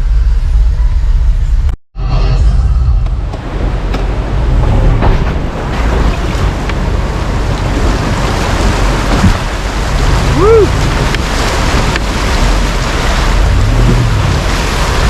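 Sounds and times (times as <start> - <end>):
loud rushing noise: 0.0 - 10.2
truck engine and tyres rumbling: 0.0 - 15.0.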